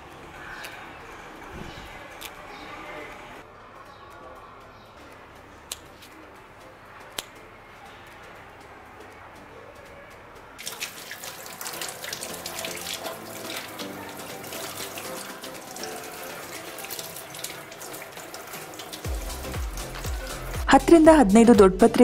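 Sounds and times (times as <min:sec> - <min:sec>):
tap water running into sink: 0:10.6 - 0:20.4.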